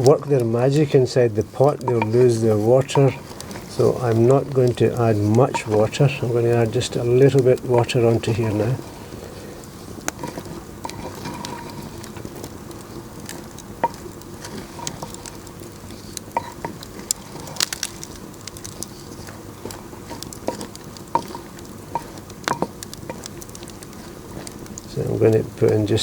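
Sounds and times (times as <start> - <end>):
curry sizzling in a pot: 0.0 - 26.0
sharp pops and crackles: 0.0 - 26.0.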